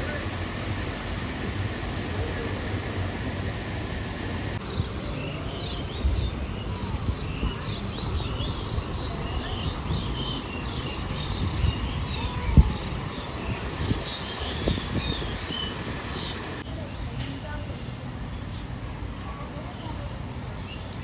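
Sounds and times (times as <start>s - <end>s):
small birds chirping: 4.6s - 21.0s.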